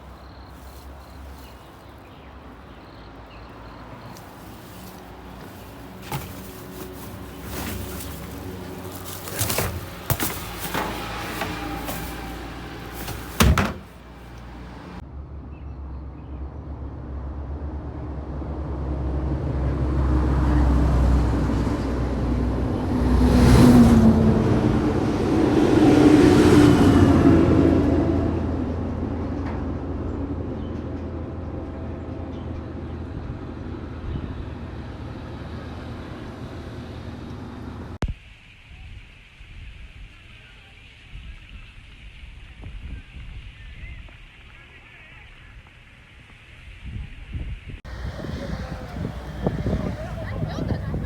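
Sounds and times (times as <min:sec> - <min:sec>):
vehicles passing close by: 0:00.0 - 0:15.0, 0:17.2 - 0:38.0, 0:47.9 - 0:51.0.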